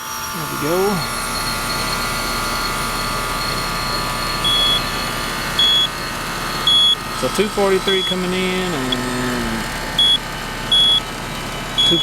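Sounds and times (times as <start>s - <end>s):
heat pump unit running: 0.0s - 12.0s
short high electronic beeps: 3.7s - 6.0s, 11.8s - 12.0s.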